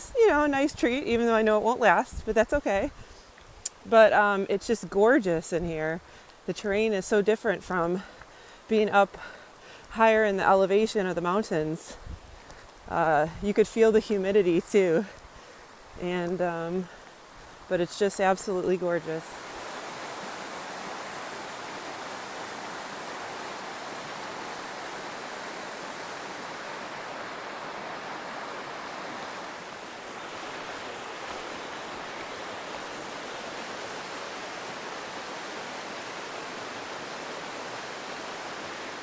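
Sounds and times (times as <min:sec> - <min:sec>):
river water rushing: 0:18.6 - 0:39.0.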